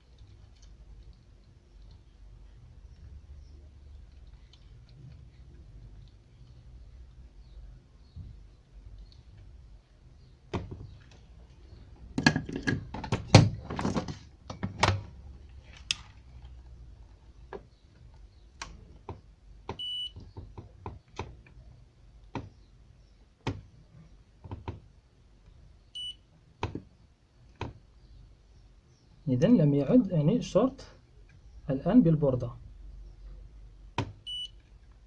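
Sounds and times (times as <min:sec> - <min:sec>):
tools clicking and knocking: 0:12.2 - 0:15.1.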